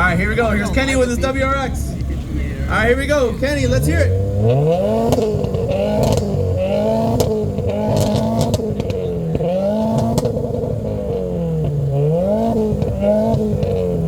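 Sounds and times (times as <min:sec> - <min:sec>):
car engine revving: 0:00.0 - 0:14.0
exhaust cracks: 0:00.0 - 0:14.0.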